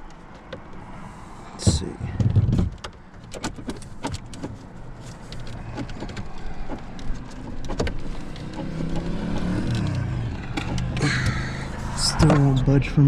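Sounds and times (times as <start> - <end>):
plastic trim clicking and ticking: 2.2 - 11.4.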